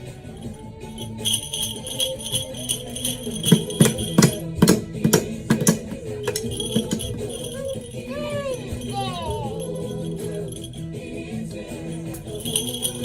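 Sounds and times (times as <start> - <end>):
jingle bells shaking: 0.0 - 13.0
toy percussion knocks: 1.0 - 9.0.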